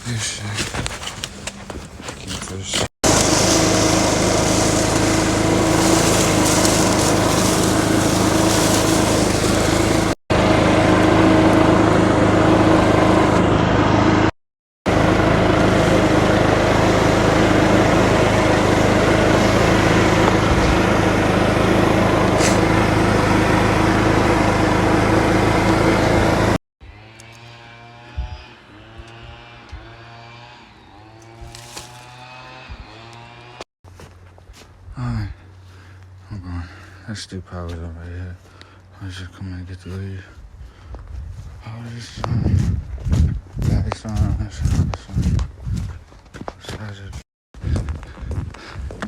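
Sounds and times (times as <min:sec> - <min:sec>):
small gasoline engine running: 0:02.3 - 0:14.3, 0:14.9 - 0:33.6.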